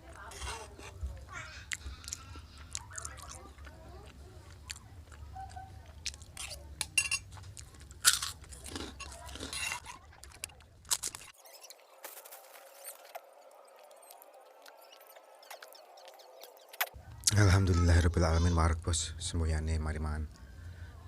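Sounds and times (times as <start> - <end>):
low background hum: 0.0 - 11.4
crunching and chewing food: 0.0 - 17.4
utensils clinking against bowl: 6.4 - 7.4, 8.0 - 11.3.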